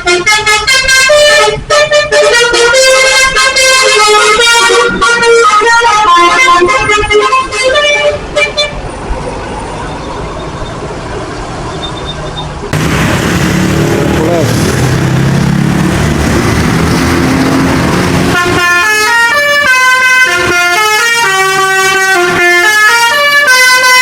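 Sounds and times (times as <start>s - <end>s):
bus horn playing a tune: 0.0s - 8.8s, 17.4s - 24.0s
traffic noise: 0.0s - 24.0s
vehicle approaching: 12.6s - 20.6s.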